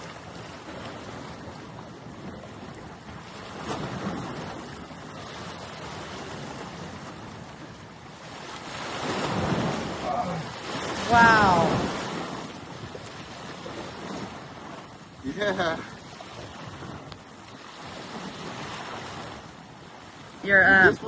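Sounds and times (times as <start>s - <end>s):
waves washing: 0.0s - 21.0s
wind buffeting microphone: 0.0s - 21.0s.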